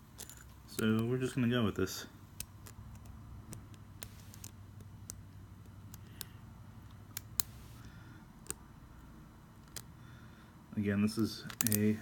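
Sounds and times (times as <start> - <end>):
lock pick metallic clicks: 11.5 - 11.9.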